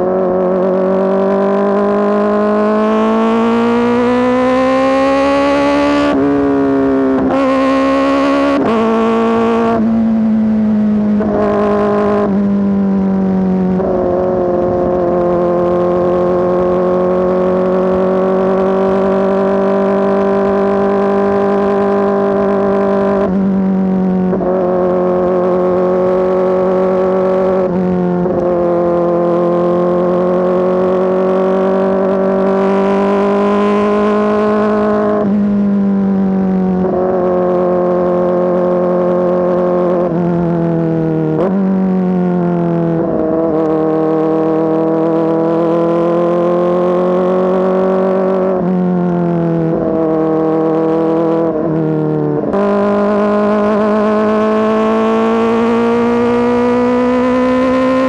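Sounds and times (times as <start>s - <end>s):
motorcycle engine revving high: 0.0s - 58.0s.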